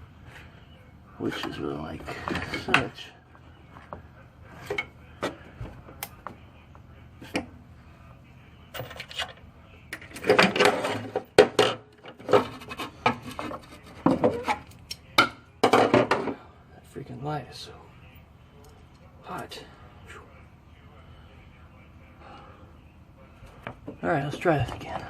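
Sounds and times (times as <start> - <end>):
rubbing and scraping handling noise: 10.0 - 14.8.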